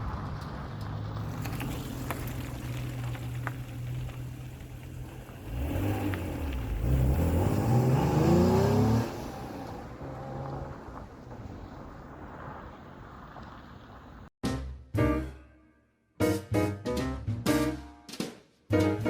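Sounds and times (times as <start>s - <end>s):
car engine idling and revving: 0.0s - 14.3s.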